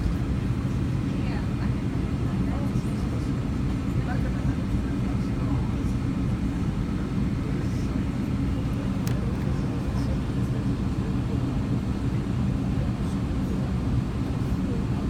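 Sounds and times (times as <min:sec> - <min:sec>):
airplane cabin rumble: 0:00.0 - 0:15.0
faint click: 0:09.0 - 0:09.5.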